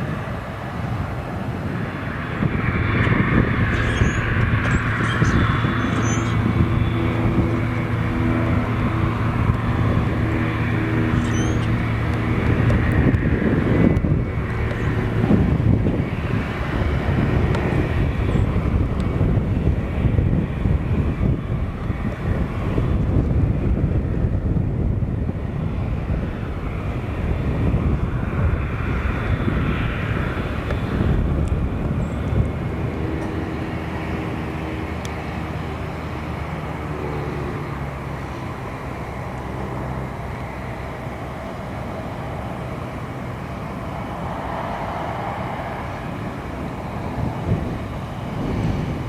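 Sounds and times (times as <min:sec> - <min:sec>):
airplane engine rumble: 0:00.0 - 0:49.0
faint pitched drone: 0:01.8 - 0:19.8.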